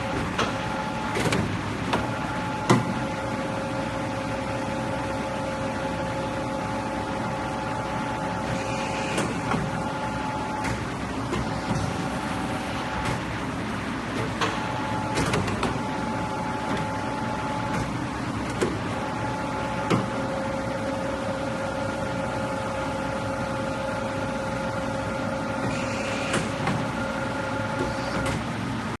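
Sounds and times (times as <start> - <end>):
pipe bending machine hum: 0.0 - 29.0.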